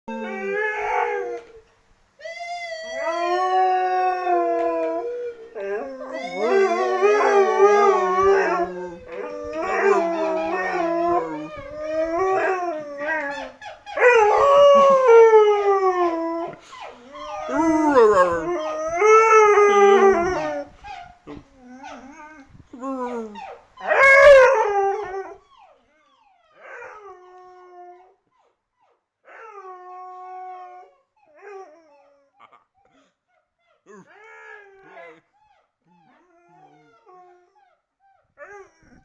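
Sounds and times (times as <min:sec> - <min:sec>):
husky howling: 0:00.1 - 0:01.7, 0:02.8 - 0:16.6, 0:17.2 - 0:20.8, 0:22.8 - 0:25.4
second lower howling voice: 0:05.8 - 0:12.2, 0:17.4 - 0:19.0, 0:22.7 - 0:23.5.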